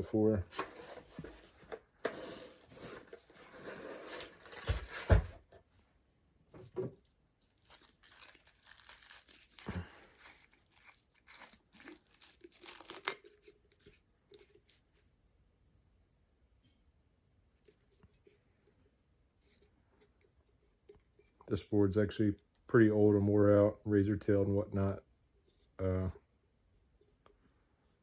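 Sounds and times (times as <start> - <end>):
rustling and scraping: 0.0 - 5.6, 17.6 - 21.5.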